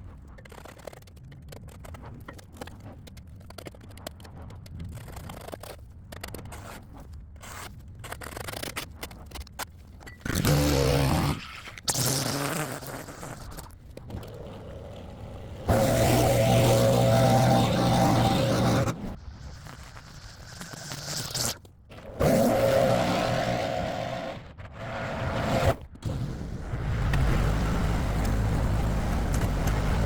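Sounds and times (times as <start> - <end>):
small engine revving: 14.3 - 19.2, 21.1 - 30.0.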